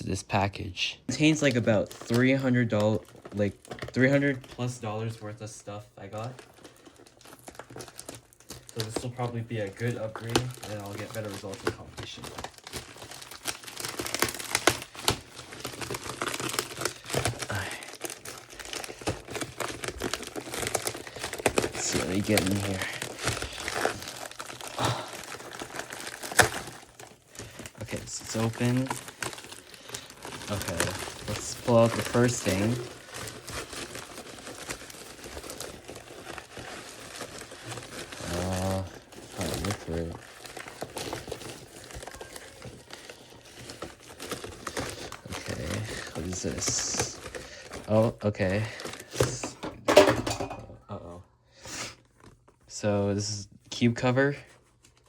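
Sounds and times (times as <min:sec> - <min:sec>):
packaging crinkling: 0:01.1 - 0:51.0, 0:51.9 - 0:52.8, 0:54.0 - 0:55.0.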